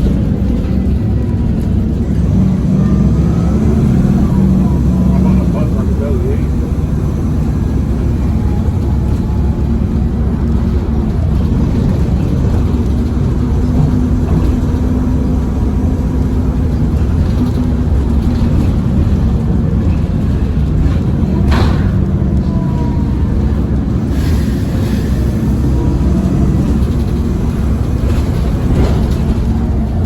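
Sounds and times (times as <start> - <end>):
bus diesel engine rumble: 0.0 - 30.0.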